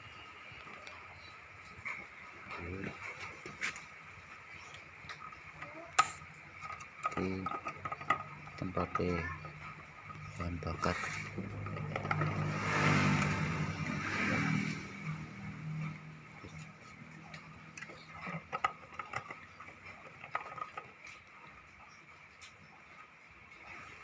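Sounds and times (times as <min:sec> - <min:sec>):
light clicks and knocks: 0:04.7 - 0:13.5, 0:15.7 - 0:21.4
small engine humming: 0:05.6 - 0:20.9.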